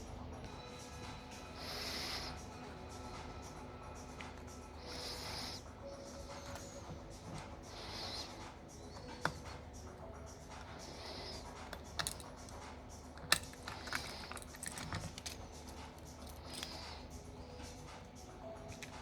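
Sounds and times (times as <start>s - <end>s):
small tools clicking on phone parts: 10.5s - 18.0s.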